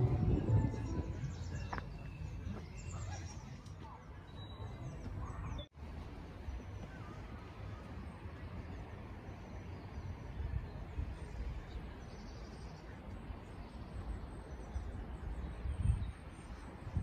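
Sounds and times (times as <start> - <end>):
low uneven rumble: 0.0 - 2.6.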